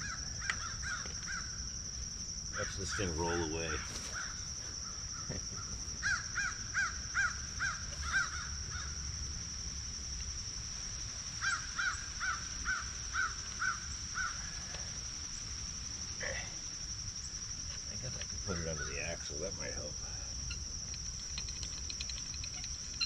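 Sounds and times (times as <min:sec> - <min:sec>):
bird calling: 0:20.2 - 0:23.0.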